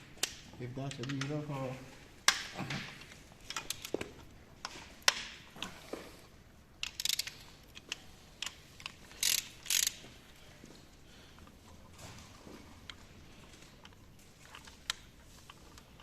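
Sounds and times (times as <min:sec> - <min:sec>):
ratchet wrench clicking: 0:06.8 - 0:10.0.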